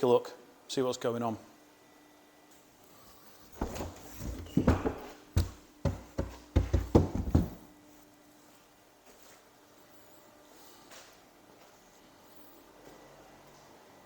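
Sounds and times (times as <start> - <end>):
knocks and thumps: 3.6 - 7.7.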